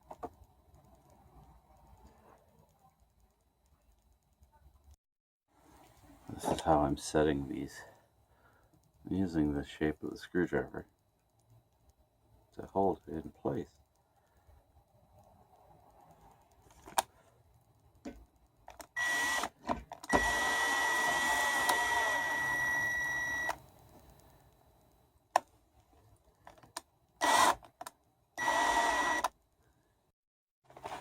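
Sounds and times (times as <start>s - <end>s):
small electric motor whining: 18.9s - 23.6s, 27.2s - 27.6s, 28.4s - 29.3s
sharp clicks: 26.4s - 29.5s.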